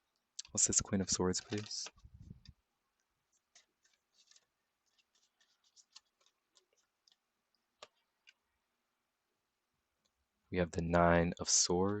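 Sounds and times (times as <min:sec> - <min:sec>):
cards being shuffled: 0:01.1 - 0:02.5, 0:03.4 - 0:07.2.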